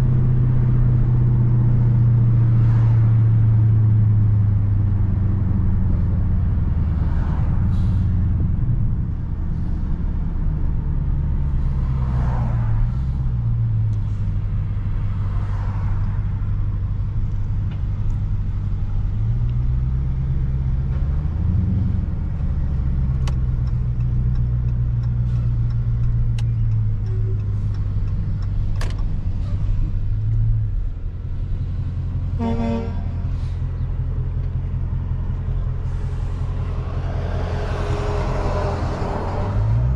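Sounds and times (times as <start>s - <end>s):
car engine exhaust drone: 0.0s - 39.9s
car horn toot: 32.3s - 33.3s.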